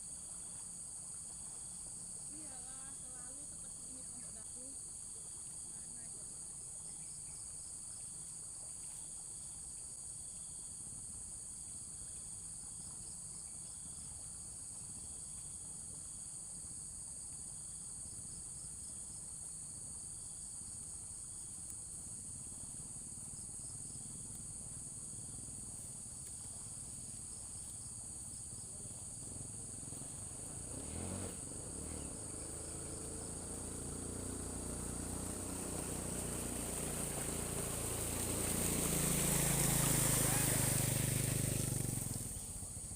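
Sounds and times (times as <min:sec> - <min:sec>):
insects buzzing: 0:00.0 - 0:42.9
engine running: 0:28.9 - 0:42.9.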